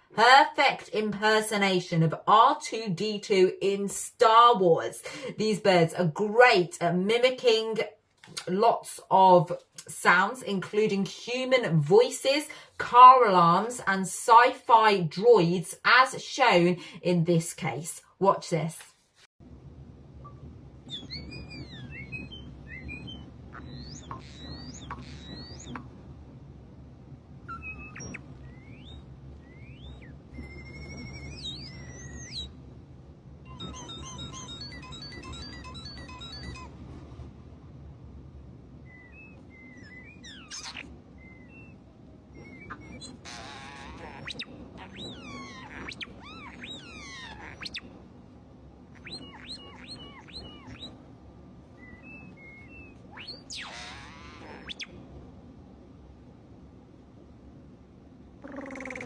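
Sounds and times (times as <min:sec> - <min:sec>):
bird beeps: 0:20.9 - 0:25.9, 0:27.5 - 0:32.6, 0:33.5 - 0:36.7, 0:38.9 - 0:47.8, 0:48.9 - 0:51.0, 0:51.8 - 0:55.0, 0:58.4 - 0:59.0
bird whistling: 0:20.9 - 0:25.9, 0:27.5 - 0:32.6, 0:33.5 - 0:36.7, 0:38.8 - 0:47.9, 0:48.9 - 0:51.0, 0:51.7 - 0:55.0, 0:58.4 - 0:59.0.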